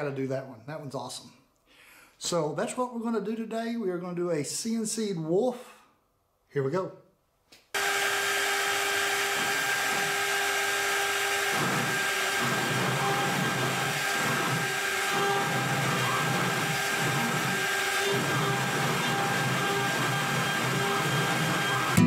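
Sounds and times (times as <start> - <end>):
low rumble of bit cutting wood: 7.8 - 22.0
router spindle whining: 7.8 - 22.0.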